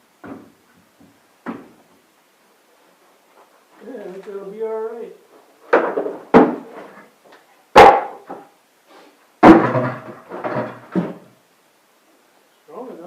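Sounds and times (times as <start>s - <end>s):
loud knocks on wooden rack: 1.4s - 1.8s, 5.7s - 6.7s, 9.4s - 11.3s
wooden rack rattling: 9.4s - 11.3s.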